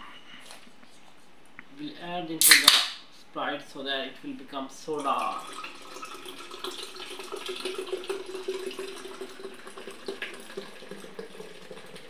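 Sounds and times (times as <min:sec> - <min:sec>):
soda pouring into a bottle: 0:04.9 - 0:12.0.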